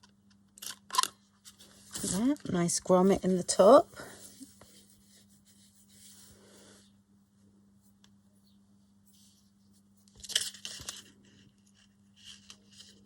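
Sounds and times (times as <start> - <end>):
paper rustling: 10.0 - 13.0.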